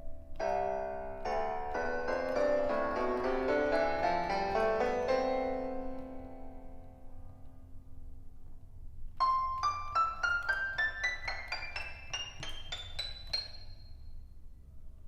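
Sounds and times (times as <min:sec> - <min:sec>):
keyboard piano notes: 0:00.0 - 0:14.2.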